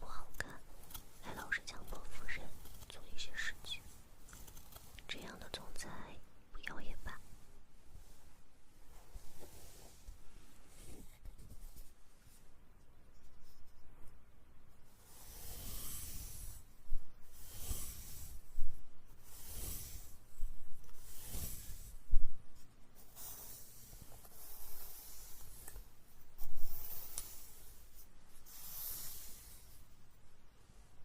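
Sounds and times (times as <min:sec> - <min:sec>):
brush swishing on microphone: 0:07.0 - 0:12.5, 0:15.1 - 0:29.9.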